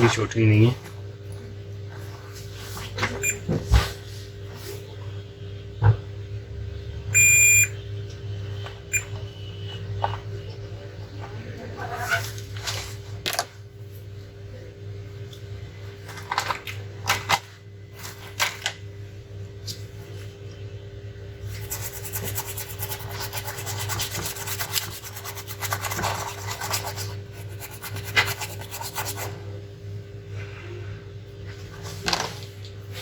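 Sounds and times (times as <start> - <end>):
low electrical hum: 0.0 - 33.0
scratching strokes on circuit board: 21.5 - 29.4.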